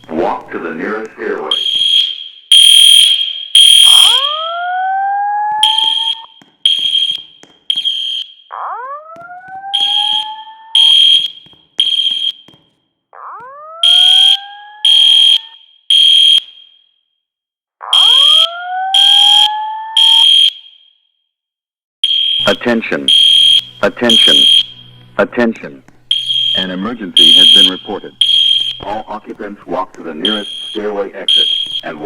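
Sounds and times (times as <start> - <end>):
rising whoop alarm tone: 3.6 - 6.3, 8.6 - 11.2, 13.3 - 15.5, 17.9 - 20.4.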